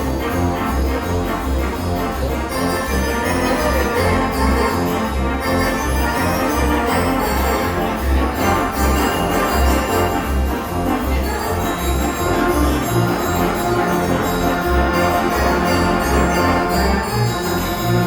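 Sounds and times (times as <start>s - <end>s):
sustained instrumental music: 0.0s - 18.0s.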